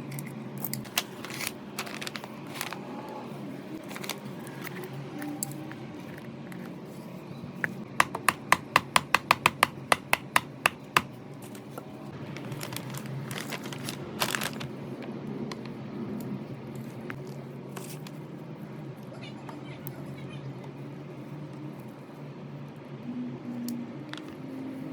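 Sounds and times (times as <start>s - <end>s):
rustling: 0.9s - 2.8s.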